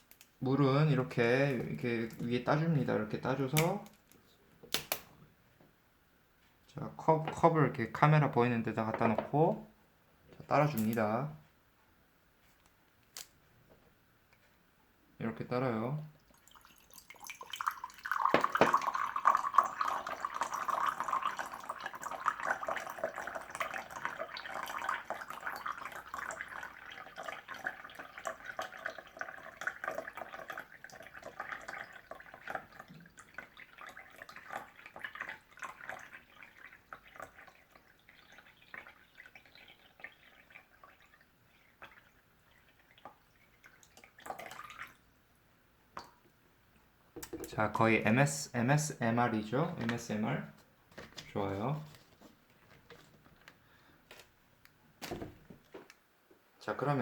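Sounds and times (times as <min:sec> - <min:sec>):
water dripping: 0:00.0 - 0:05.1, 0:10.4 - 0:11.2, 0:16.1 - 0:45.1, 0:45.9 - 0:47.9
water pouring into a cup: 0:16.2 - 0:45.1.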